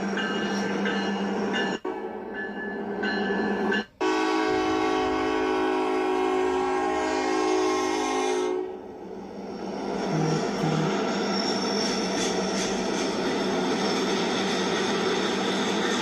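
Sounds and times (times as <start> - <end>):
locomotive air horn blast: 4.0 - 8.8
locomotive sound: 9.1 - 16.0.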